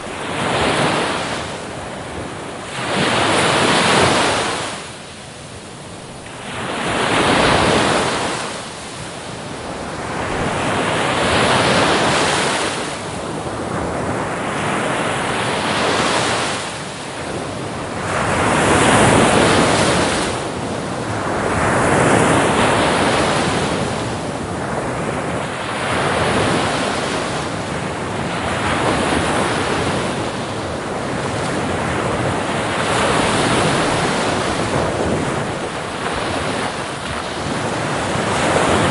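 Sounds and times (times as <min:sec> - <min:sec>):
sea waves breaking on shore: 0:00.0 - 0:38.9.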